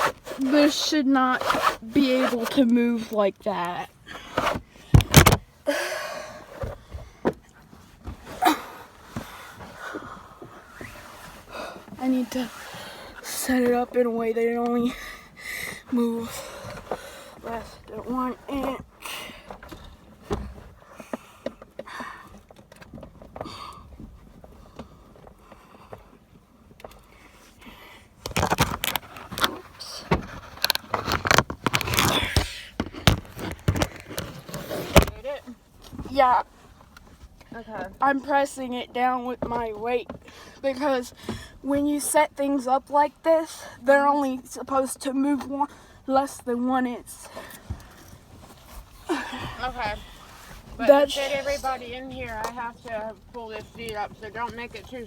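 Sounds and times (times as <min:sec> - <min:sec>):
rustling: 0:00.0 - 0:05.6, 0:06.2 - 0:21.7, 0:26.6 - 0:38.4, 0:46.5 - 0:55.0
car seat knocking and scraping: 0:03.6 - 0:05.6, 0:06.3 - 0:15.2, 0:15.8 - 0:21.6, 0:28.2 - 0:38.0, 0:47.6 - 0:55.0
heavy breathing: 0:05.6 - 0:07.2, 0:08.4 - 0:13.5, 0:14.8 - 0:17.9, 0:19.0 - 0:20.0, 0:47.2 - 0:51.7.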